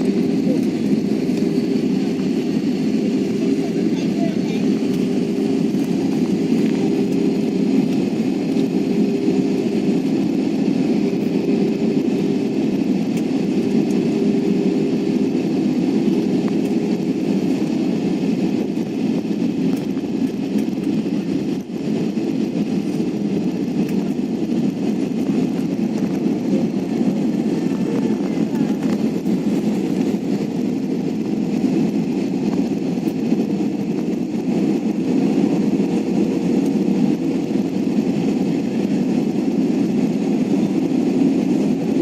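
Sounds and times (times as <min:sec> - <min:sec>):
airliner engine drone: 0:00.0 - 0:42.0.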